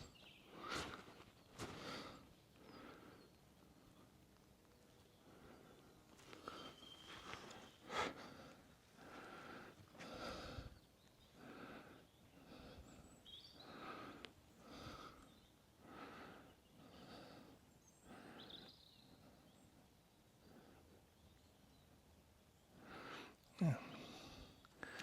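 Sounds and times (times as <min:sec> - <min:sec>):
person breathing heavily: 0:00.5 - 0:03.4, 0:07.4 - 0:10.8, 0:11.4 - 0:19.4, 0:22.8 - 0:25.0
bird chirps: 0:04.8 - 0:08.0, 0:10.8 - 0:14.2, 0:17.7 - 0:19.8.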